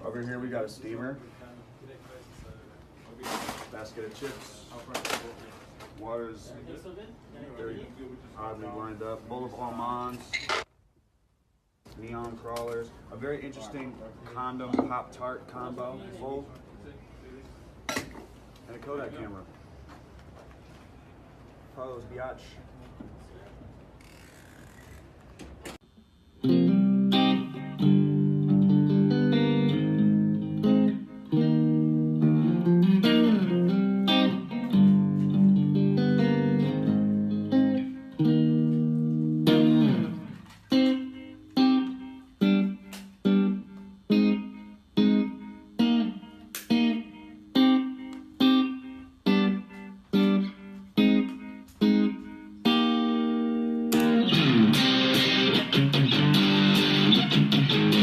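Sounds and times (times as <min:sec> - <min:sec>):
instrumental guitar music: 0:26.4 - 0:58.0.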